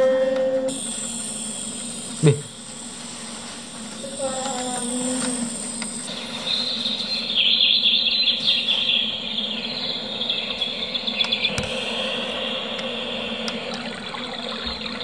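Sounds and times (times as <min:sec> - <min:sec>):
insect calls: 0:00.7 - 0:15.0
bird chirps: 0:04.0 - 0:15.0.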